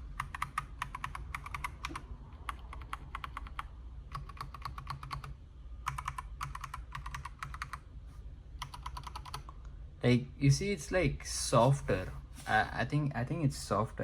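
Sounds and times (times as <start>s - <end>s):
mechanical keyboard typing: 0.1s - 7.8s, 8.6s - 9.6s.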